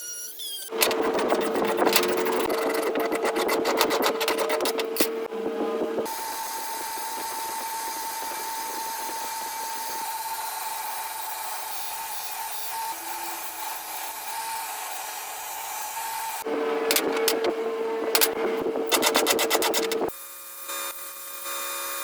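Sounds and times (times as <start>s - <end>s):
small power tool whining: 0.0s - 5.3s, 6.0s - 22.0s.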